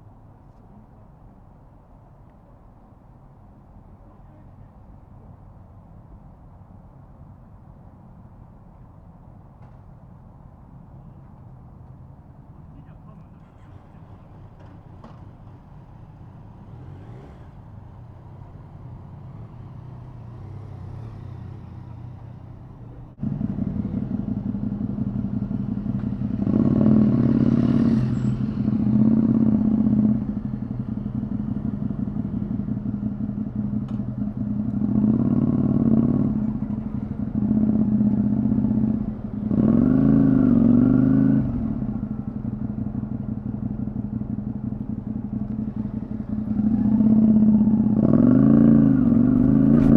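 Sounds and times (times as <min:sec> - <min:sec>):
motorcycle engine idling and revving: 0:09.0 - 0:49.9
quiet low rumble: 0:41.4 - 0:49.9.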